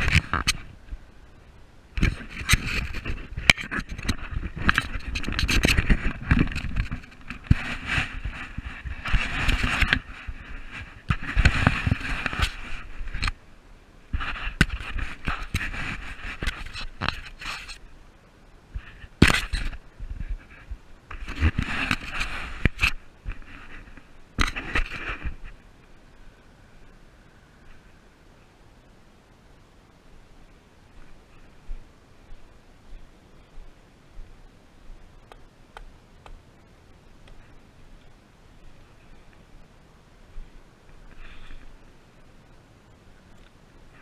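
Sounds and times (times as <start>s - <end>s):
camera housing rumble and clicks: 0.0s - 1.1s, 1.9s - 13.4s, 14.1s - 18.0s, 18.7s - 28.0s, 35.2s - 42.5s, 43.1s - 44.0s
wind: 0.0s - 44.0s.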